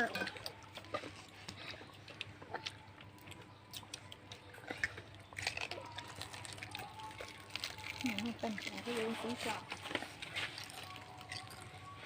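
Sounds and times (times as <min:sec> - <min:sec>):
chewing clicks and taps: 0:00.5 - 0:08.0.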